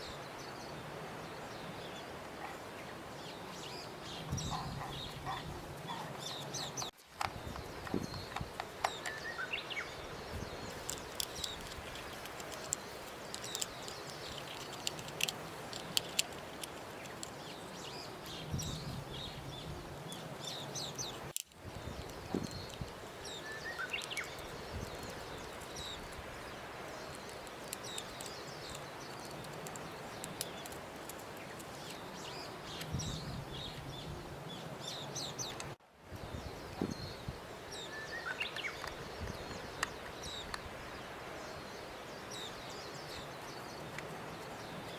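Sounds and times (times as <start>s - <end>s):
steady outdoor hiss: 0.0s - 44.9s
birds chirping: 7.6s - 35.7s.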